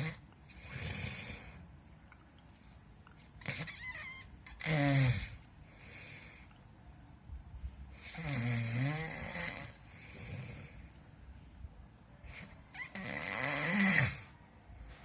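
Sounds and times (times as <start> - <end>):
quiet breathing: 0.0 - 1.8, 5.2 - 6.9, 8.8 - 12.6
person snoring: 8.0 - 10.8, 13.0 - 14.3.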